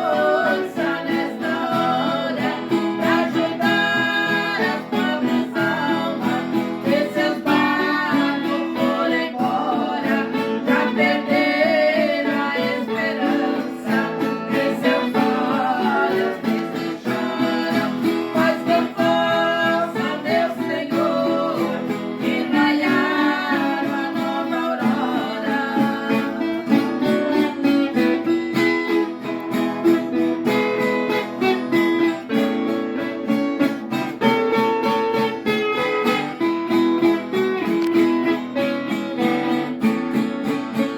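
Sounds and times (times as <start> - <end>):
person singing worship song: 0.0 - 27.6
acoustic guitar strumming: 0.0 - 40.9.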